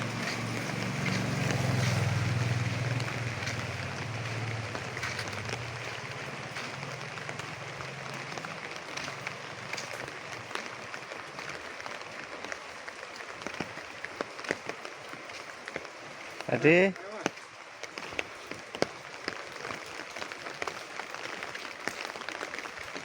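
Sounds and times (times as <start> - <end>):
vehicle engine hum passing: 0.0 - 10.0
drizzling rain: 0.0 - 23.0.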